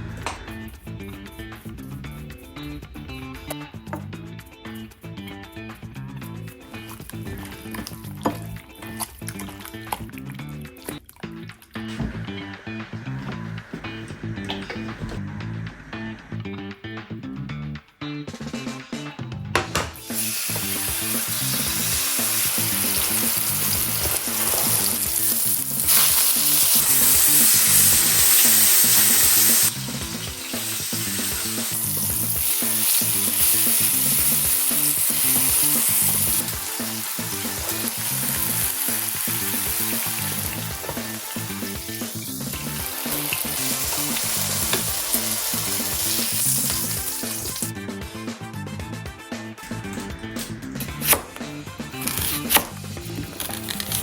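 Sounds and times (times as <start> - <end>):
food sizzling in a hot pan: 20.0 - 47.7, 52.0 - 54.0.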